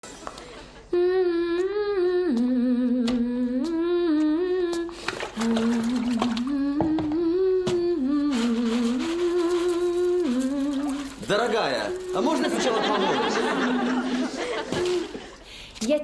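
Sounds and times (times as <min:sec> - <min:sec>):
person humming a tune: 0:00.9 - 0:11.2, 0:11.9 - 0:12.4, 0:14.7 - 0:15.2.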